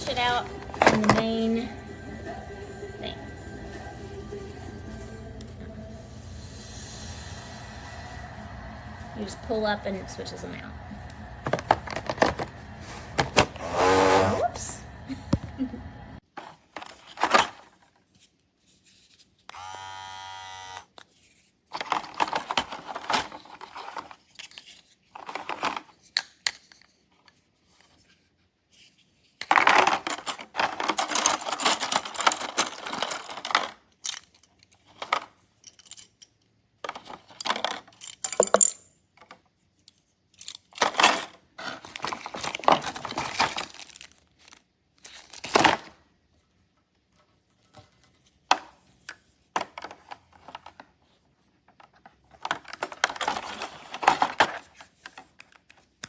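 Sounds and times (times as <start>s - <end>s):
plastic parts clattering: 0.0s - 1.6s, 11.3s - 13.7s, 16.3s - 19.3s, 21.0s - 28.2s, 28.8s - 46.1s, 47.5s - 56.0s
trimmer motor buzz: 13.6s - 14.5s, 19.5s - 20.9s.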